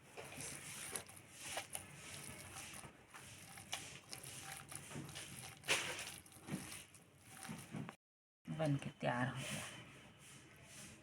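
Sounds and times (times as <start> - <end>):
soft squishes: 0.0 - 8.0.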